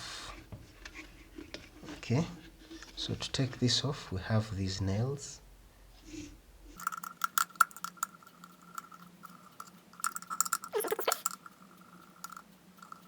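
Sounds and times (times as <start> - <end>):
faint hum with whine: 0.0 - 13.0
screwdriver and screws clinking: 8.8 - 11.5.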